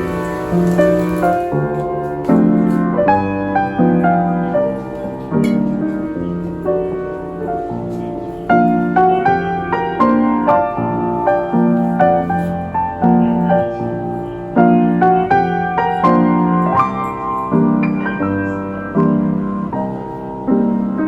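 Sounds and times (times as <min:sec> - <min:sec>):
gentle piano music: 0:00.0 - 0:21.0.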